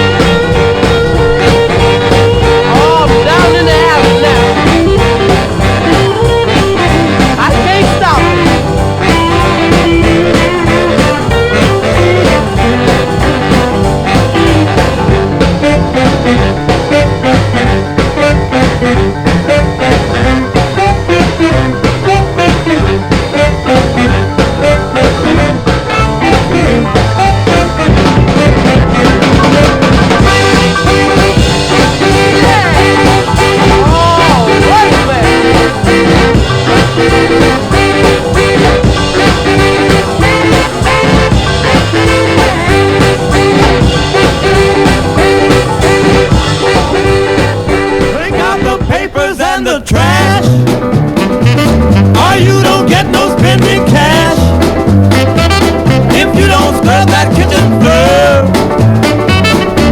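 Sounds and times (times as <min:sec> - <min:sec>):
rhythm and blues record: 0:00.0 - 0:59.9.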